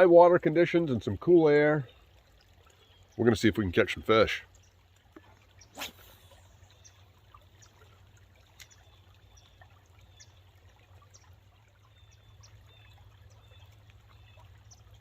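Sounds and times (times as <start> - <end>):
faint trickle of water: 0.0 - 15.0.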